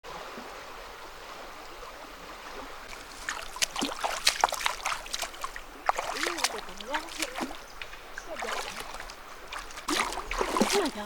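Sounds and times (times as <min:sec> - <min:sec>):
stream running water: 0:00.0 - 0:11.0
short sharp splashes and clicks: 0:02.6 - 0:11.0.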